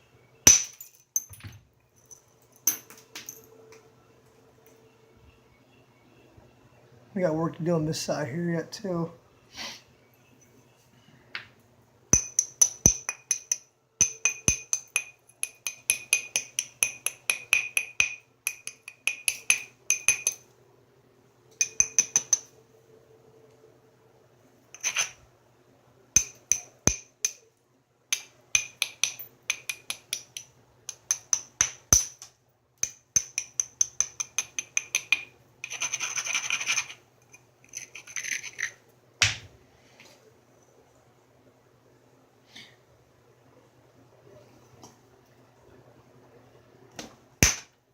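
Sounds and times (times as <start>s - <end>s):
hammerstone tapping stone edge: 21.6s - 22.4s, 26.2s - 27.4s
stone scraping on stone: 24.8s - 25.2s, 35.6s - 37.0s, 37.6s - 38.8s.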